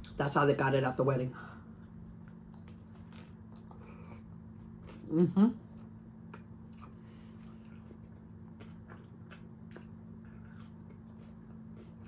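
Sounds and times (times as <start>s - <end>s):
steady low hum: 0.0s - 12.0s
person chewing crunchy food: 1.8s - 5.1s, 5.8s - 12.0s.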